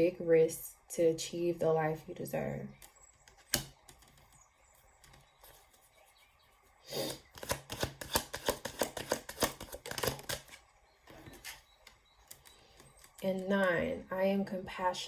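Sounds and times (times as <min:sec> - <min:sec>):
cards being shuffled: 0:07.1 - 0:11.6.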